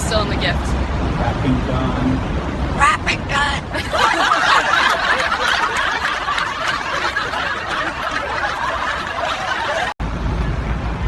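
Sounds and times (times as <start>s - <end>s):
people laughing: 3.7s - 10.0s.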